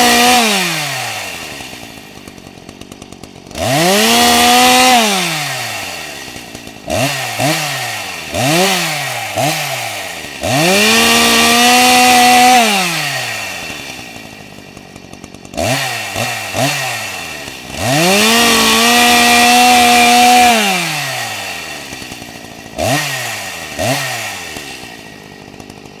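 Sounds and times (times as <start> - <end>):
chainsaw engine revving: 0.0 - 26.0.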